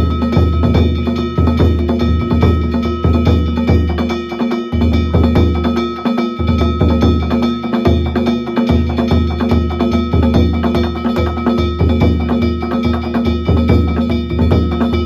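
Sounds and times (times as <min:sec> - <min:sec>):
gongs clanging: 0:00.0 - 0:15.0
taiko drum beating fast: 0:00.0 - 0:15.0.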